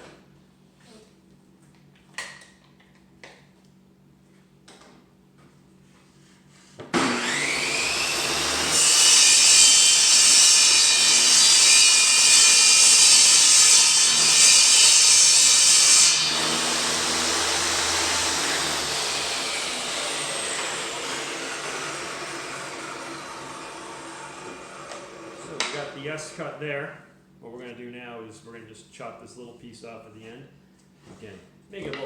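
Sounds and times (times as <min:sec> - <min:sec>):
saw cutting wooden board: 0:07.0 - 0:26.0
table saw spinning: 0:07.0 - 0:26.0.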